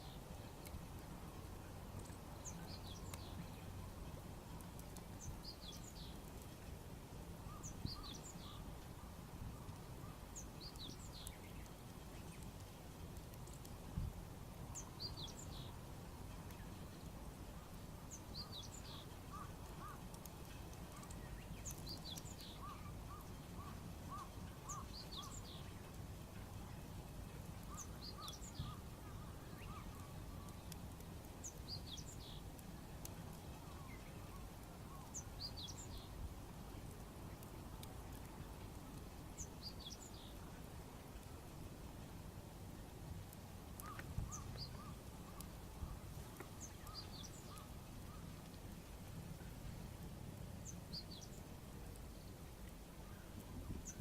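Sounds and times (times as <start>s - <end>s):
small birds singing: 0.0s - 6.6s, 7.3s - 38.4s, 39.1s - 40.7s, 43.8s - 54.0s
low outdoor rumble: 0.0s - 54.0s.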